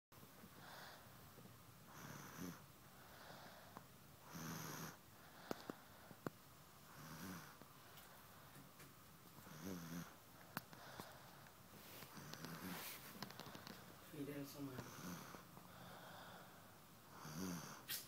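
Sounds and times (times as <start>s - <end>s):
pet snoring faintly: 1.9s - 6.2s, 6.9s - 7.6s, 9.4s - 18.0s.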